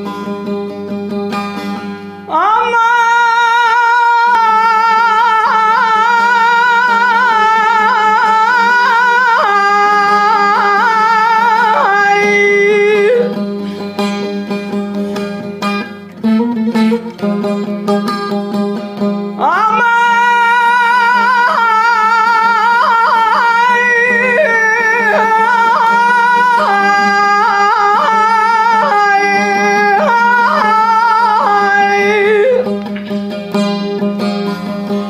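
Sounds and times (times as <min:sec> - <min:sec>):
plucked string notes: 0:00.0 - 0:35.0
person singing with wavering ornaments: 0:02.3 - 0:13.4, 0:19.4 - 0:32.7.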